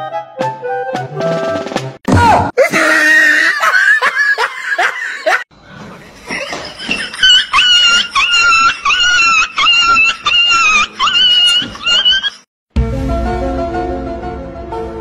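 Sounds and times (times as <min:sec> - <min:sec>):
person laughing hard: 0:02.6 - 0:05.5, 0:06.2 - 0:12.4
high-pitched cries: 0:06.9 - 0:12.4.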